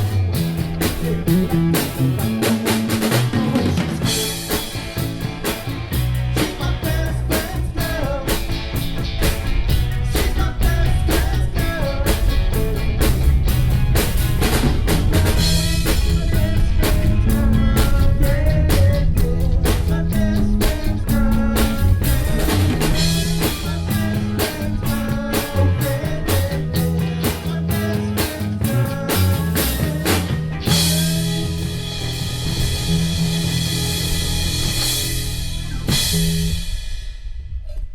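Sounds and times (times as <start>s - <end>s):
bass guitar: 0.0s - 37.9s
drum kit: 0.0s - 37.9s
electric guitar: 0.0s - 37.9s.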